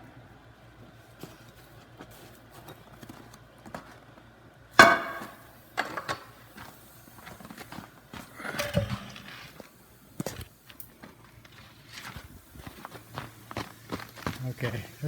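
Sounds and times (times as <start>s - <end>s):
hammer striking steel: 4.8s - 6.3s, 8.5s - 9.3s
metal clatter: 4.8s - 6.4s, 8.4s - 9.7s.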